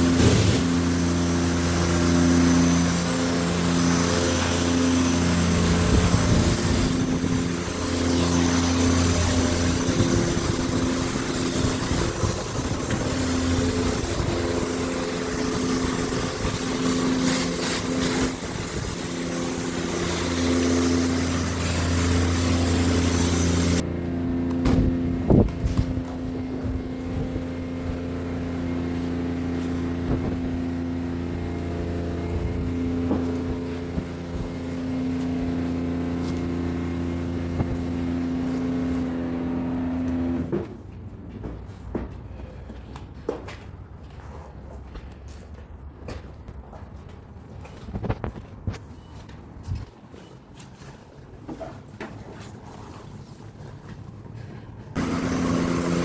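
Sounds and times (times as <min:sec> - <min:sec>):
loud hiss: 0:00.0 - 0:23.8
steady motor hum: 0:00.0 - 0:40.6, 0:54.4 - 0:56.0.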